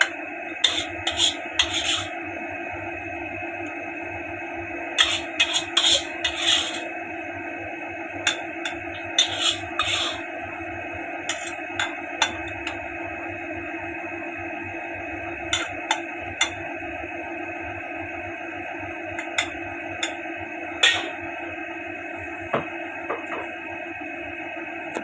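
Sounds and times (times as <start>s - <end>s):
utensil scraping a cooking pan: 0.5s - 2.2s, 5.0s - 6.9s, 8.3s - 10.3s, 11.3s - 12.8s, 15.5s - 16.6s, 19.2s - 20.2s, 20.8s - 21.2s.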